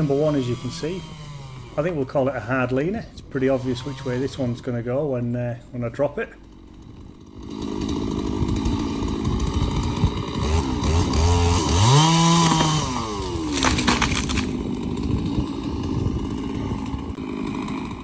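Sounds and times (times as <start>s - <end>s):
chainsaw revving: 0.0s - 18.0s
wood cracking: 6.7s - 17.9s.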